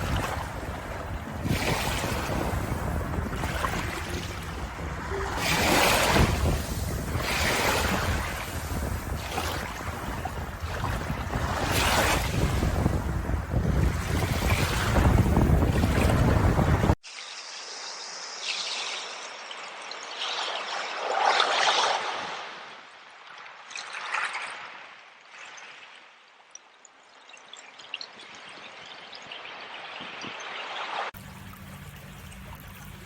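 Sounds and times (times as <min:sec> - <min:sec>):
sea waves washing on shore: 0:00.0 - 0:17.0
wind noise on microphone: 0:00.0 - 0:17.0
trickling stream: 0:00.0 - 0:33.0.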